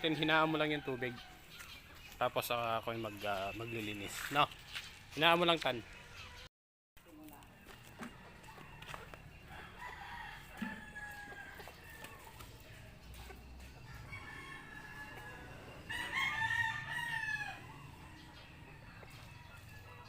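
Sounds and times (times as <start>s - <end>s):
rooster crowing: 8.1s - 12.4s, 13.8s - 20.0s.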